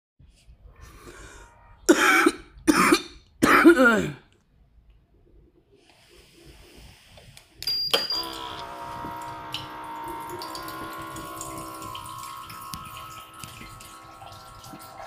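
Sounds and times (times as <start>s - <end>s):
man coughing: 1.9s - 4.3s
thin high tone: 7.6s - 15.0s.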